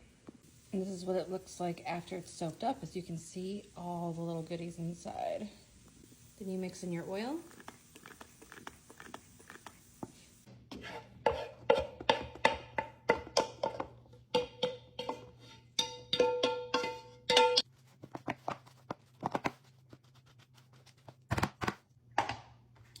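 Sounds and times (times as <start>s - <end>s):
spoon clanking in mixing bowl: 11.2s - 17.6s.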